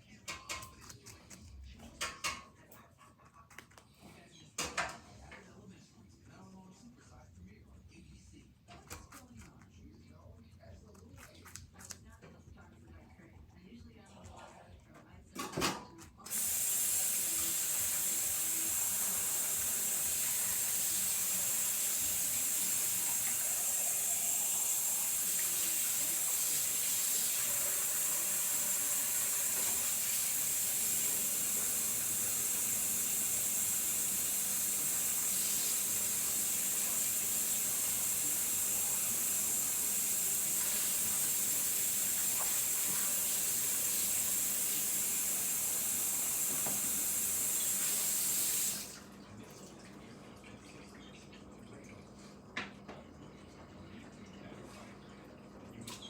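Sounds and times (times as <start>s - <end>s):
water running from tap: 16.2s - 56.0s.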